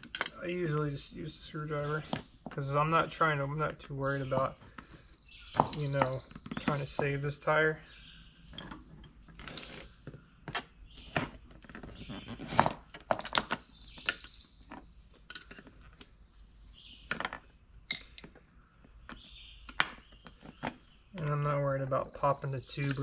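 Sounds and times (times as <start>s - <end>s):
high insect trill: 0.0s - 23.0s
metal scraping on rim and rubber: 8.5s - 13.0s.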